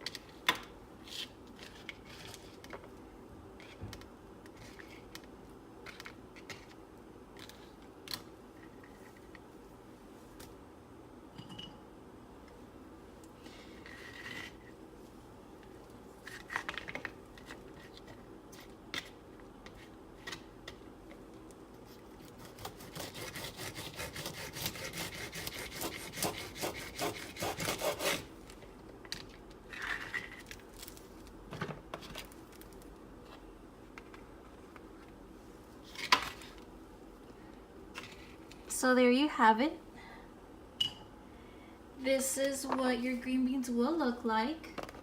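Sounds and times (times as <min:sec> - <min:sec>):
knife chopping on wooden board: 0:22.4 - 0:28.2.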